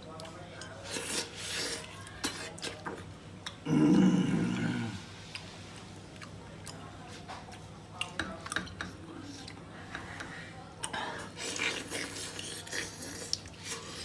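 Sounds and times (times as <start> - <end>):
person grunting: 3.7 - 5.0.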